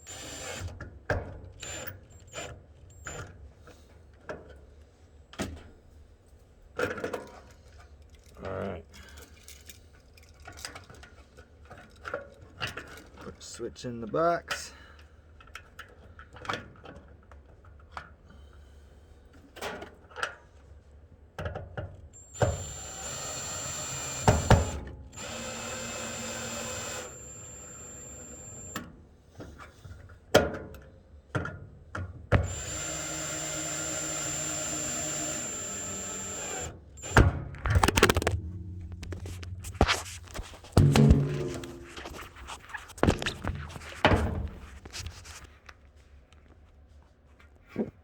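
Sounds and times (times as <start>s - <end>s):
power drill whining: 0.0s - 0.8s, 1.6s - 3.3s, 22.2s - 28.8s, 32.4s - 42.2s
sharp knocks and clicks: 36.1s - 44.2s.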